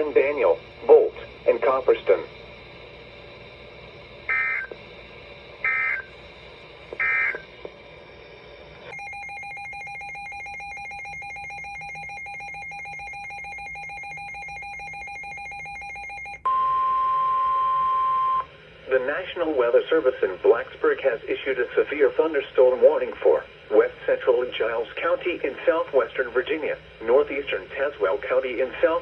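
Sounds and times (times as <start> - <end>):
steady warning alarm tone: 0.0 - 7.6, 8.9 - 18.5
short data bursts: 5.6 - 6.1, 7.0 - 7.5.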